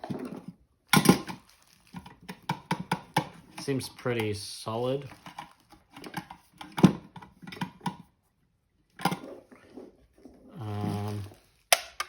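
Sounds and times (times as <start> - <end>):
plastic parts knocking and clicking: 0.0 - 4.4, 5.0 - 8.1, 11.0 - 12.0.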